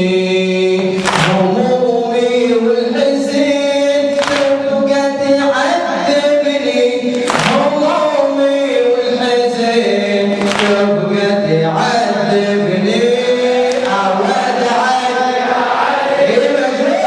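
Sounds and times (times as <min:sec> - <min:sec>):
sharp rhythmic hits: 0:00.6 - 0:14.7
voices chanting unaccompanied: 0:07.2 - 0:17.0.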